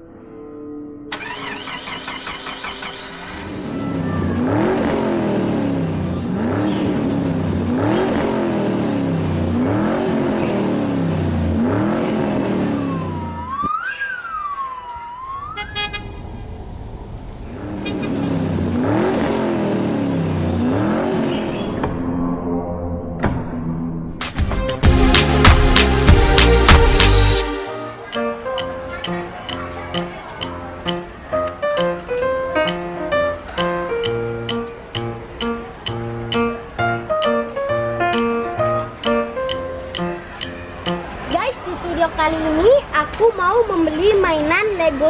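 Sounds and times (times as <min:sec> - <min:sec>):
car engine revving: 0:01.1 - 0:13.4, 0:17.4 - 0:22.0
siren-like wailing tone: 0:12.7 - 0:17.0.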